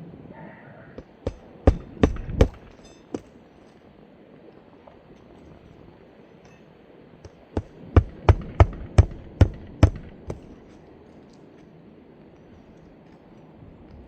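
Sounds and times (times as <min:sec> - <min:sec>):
hammer striking roofing nails: 0:01.0 - 0:03.3, 0:07.2 - 0:10.6.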